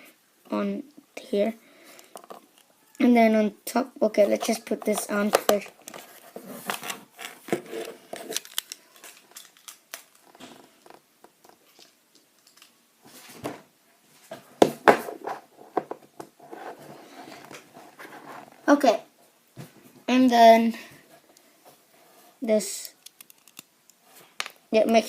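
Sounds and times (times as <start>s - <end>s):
plastic bricks clicking and rattling: 22.9s - 23.7s.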